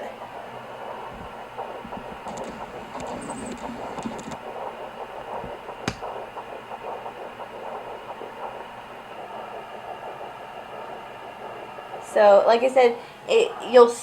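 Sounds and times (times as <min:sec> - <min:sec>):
fetal heartbeat pulsing whoosh: 0:00.0 - 0:12.0
sharp click: 0:05.8 - 0:06.2.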